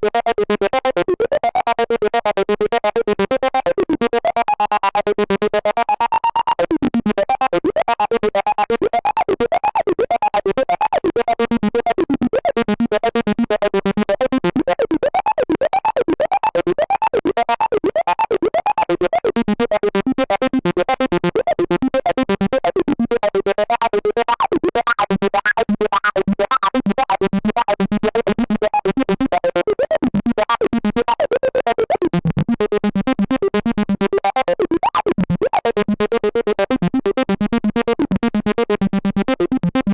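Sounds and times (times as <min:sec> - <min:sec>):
synthesizer acid bass line: 0:23.8 - 0:32.6, 0:33.4 - 0:35.7.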